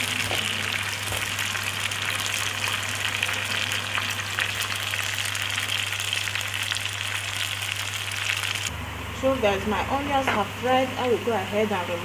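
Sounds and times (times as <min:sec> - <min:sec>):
onions sizzling in a pan: 0:00.0 - 0:08.7.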